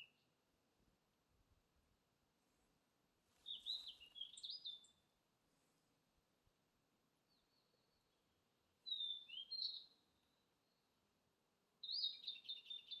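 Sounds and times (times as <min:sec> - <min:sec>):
songbirds singing: 0:00.0 - 0:00.4, 0:03.4 - 0:05.2, 0:07.2 - 0:11.0, 0:11.8 - 0:13.0.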